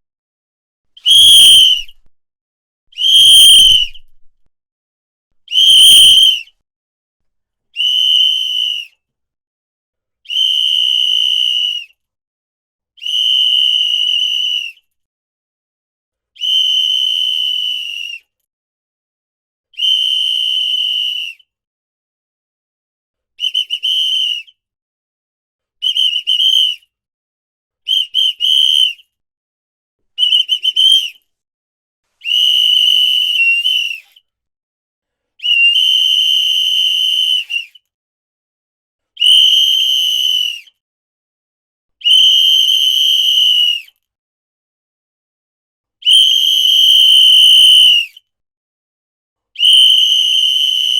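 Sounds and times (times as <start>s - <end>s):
whistle blasts: 1.0s - 2.0s, 3.0s - 4.1s, 5.5s - 6.5s, 30.2s - 31.2s, 32.2s - 34.0s, 35.4s - 37.8s, 39.2s - 40.7s, 42.0s - 43.9s, 46.0s - 48.2s, 49.6s - 50.9s.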